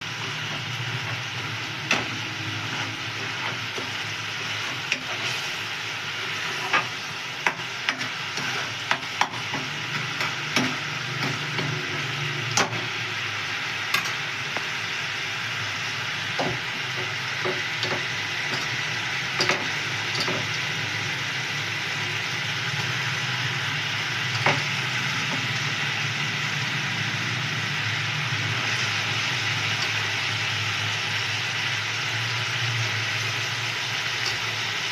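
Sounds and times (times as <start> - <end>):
vegetables sizzling in oil: 0.0 - 34.9
spatula scraping a pan: 0.2 - 11.8.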